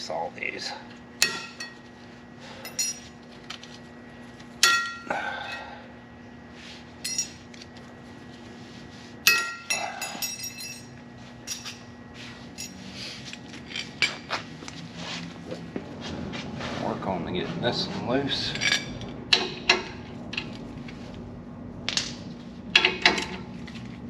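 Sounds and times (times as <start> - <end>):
metal parts clanking: 2.6 - 3.1, 9.3 - 11.8, 18.4 - 20.6
metal parts clinking: 2.6 - 3.7, 7.0 - 7.4, 9.3 - 11.8, 12.6 - 14.3, 18.4 - 19.5.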